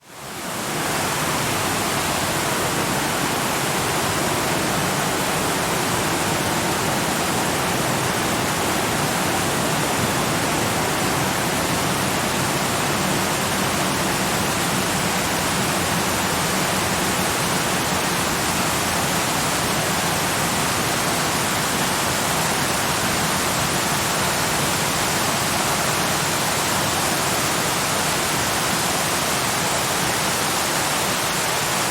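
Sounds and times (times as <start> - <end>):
waterfall rushing: 0.0 - 31.9.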